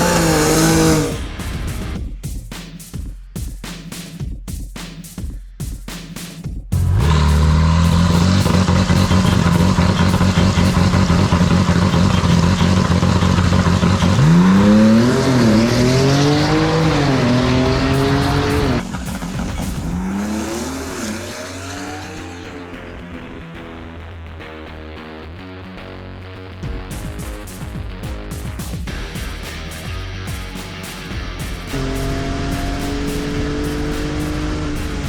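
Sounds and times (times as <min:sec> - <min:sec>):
race car engine accelerating: 0:00.0 - 0:01.3, 0:06.8 - 0:23.8, 0:31.7 - 0:35.0.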